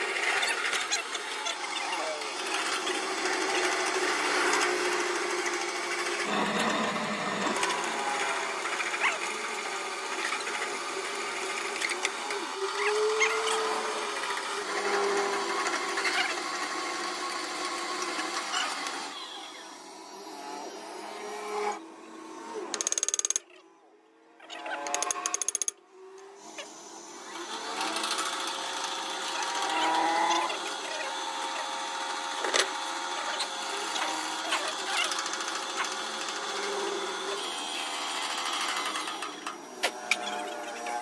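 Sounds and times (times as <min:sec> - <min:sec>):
machine tool motor hum: 0:00.0 - 0:23.5, 0:24.6 - 0:41.0
clicks: 0:22.7 - 0:23.6, 0:24.8 - 0:25.8.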